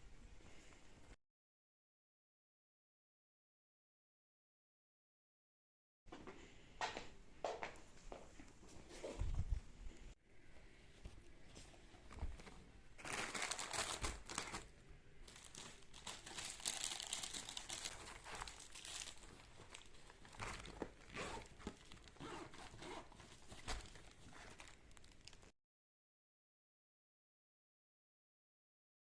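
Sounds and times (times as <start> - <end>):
crinkling and rustling: 11.0 - 25.5.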